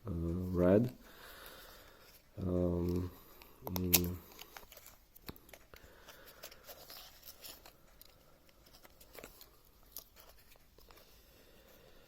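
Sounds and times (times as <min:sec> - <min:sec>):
small handling clicks and rustles: 0:02.0 - 0:11.2.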